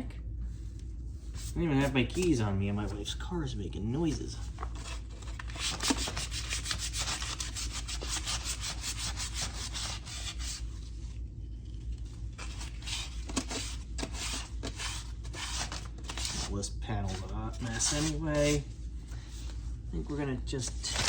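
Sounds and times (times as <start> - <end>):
sandpaper rubbing on car bodywork: 6.0 - 10.6.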